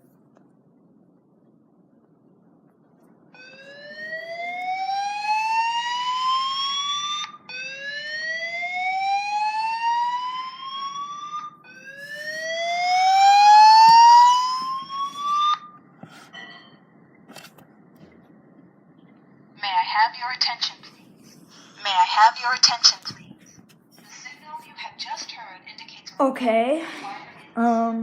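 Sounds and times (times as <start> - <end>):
fire alarm slow whoop tones: 3.4 - 15.8.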